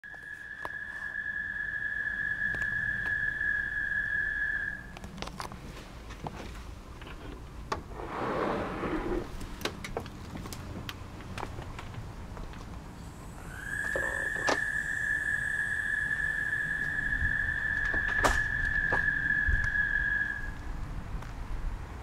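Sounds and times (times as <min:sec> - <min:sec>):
high-pitched animal call: 0:00.2 - 0:05.1, 0:13.2 - 0:20.6.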